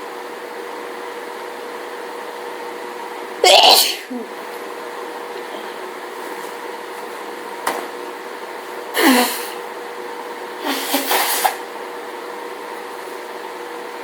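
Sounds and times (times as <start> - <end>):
woman sneezing: 3.4 - 4.3, 9.0 - 9.6, 10.6 - 11.6.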